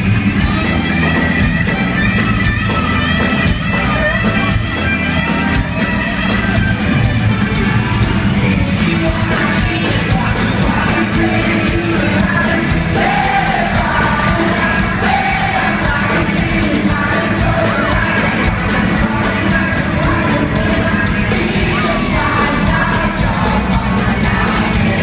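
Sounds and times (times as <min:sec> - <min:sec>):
crowd yelling and singing along: 0:00.0 - 0:25.0
live rock band playing: 0:00.0 - 0:25.0
person singing: 0:07.5 - 0:25.0.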